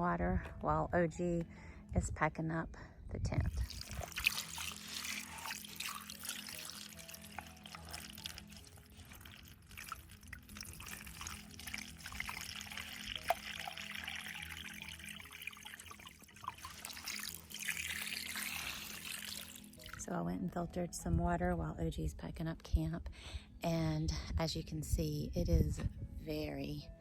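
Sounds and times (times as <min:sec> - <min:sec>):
background music with low notes: 0:00.0 - 0:27.0
water trickling and pouring: 0:03.5 - 0:20.0.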